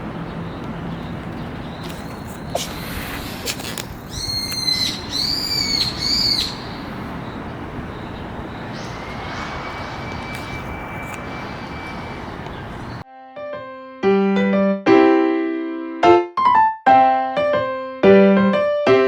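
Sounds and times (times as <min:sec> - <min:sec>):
bird calling: 0:00.0 - 0:13.0
outdoor background noise: 0:00.0 - 0:13.1.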